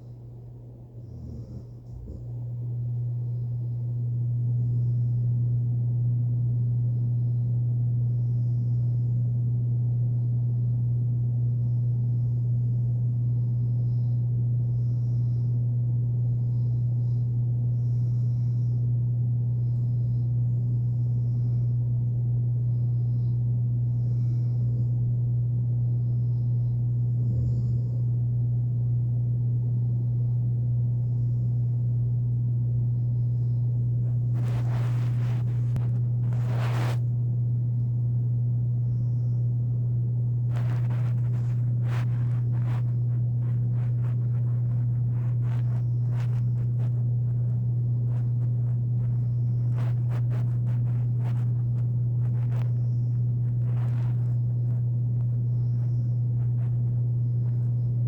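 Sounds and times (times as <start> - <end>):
air conditioner humming: 0.0 - 58.0.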